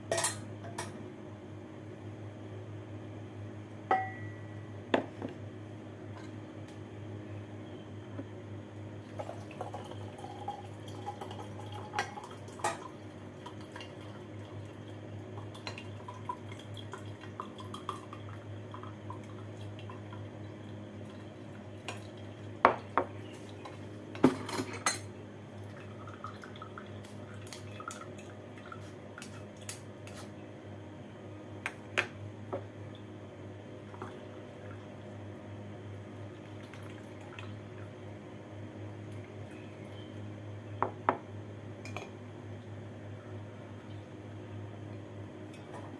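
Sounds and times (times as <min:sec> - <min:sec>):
steady low hum: 0:00.0 - 0:45.9
utensils and dishes clinking: 0:00.1 - 0:00.9, 0:24.2 - 0:25.1.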